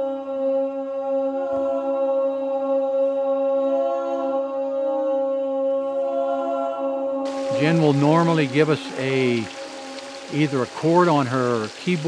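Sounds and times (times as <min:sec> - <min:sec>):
group of voices singing drone: 0:07.3 - 0:12.0.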